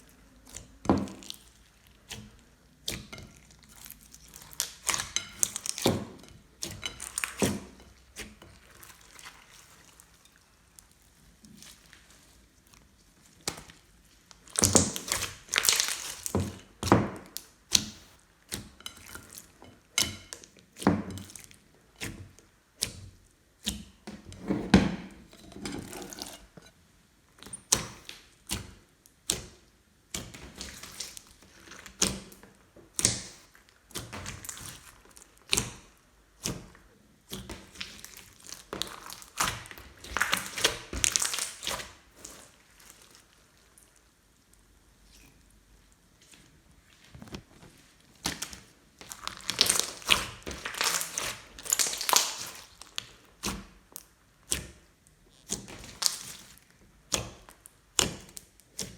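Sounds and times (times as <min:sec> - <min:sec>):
wet squelches of slime: 0:00.0 - 0:19.6, 0:30.2 - 0:58.9.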